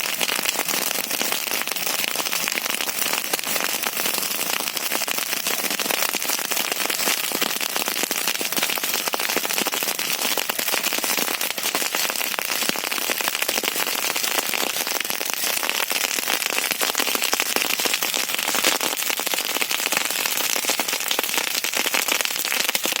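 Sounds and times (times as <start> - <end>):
wood fire crackling: 0.0 - 23.0.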